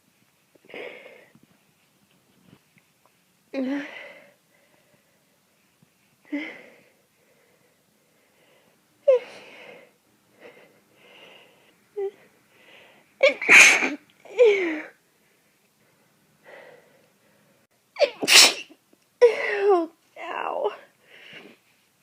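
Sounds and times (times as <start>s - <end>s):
person sneezing: 13.2s - 14.9s, 18.0s - 19.7s.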